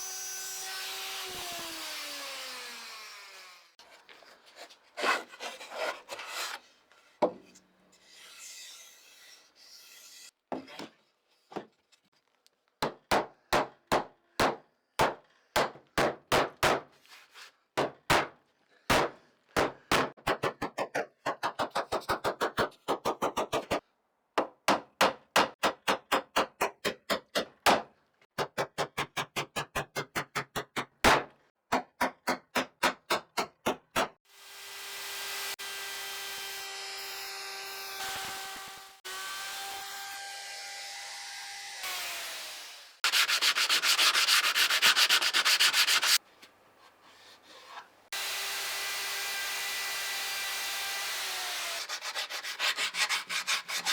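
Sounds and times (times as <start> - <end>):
hand filing strokes: 3.8 - 7.2, 43.0 - 46.2, 51.4 - 53.9
irregular scraping: 3.8 - 8.6.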